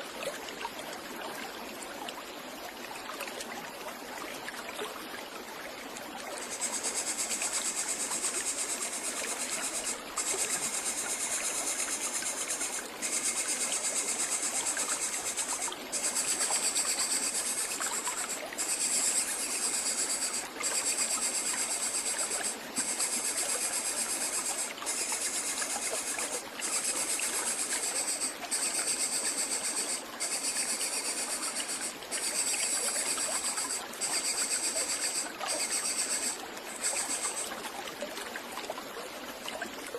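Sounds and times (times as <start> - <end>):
steady background hiss: 6.2 - 37.6
insect trilling: 6.4 - 37.5.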